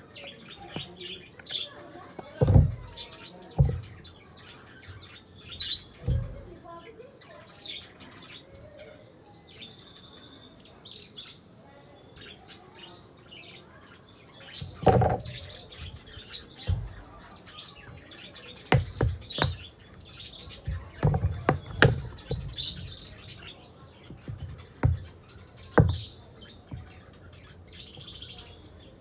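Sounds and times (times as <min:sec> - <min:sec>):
small birds chirping: 0:00.0 - 0:29.0
dull thumps: 0:02.2 - 0:04.1, 0:05.6 - 0:06.5, 0:14.6 - 0:28.6.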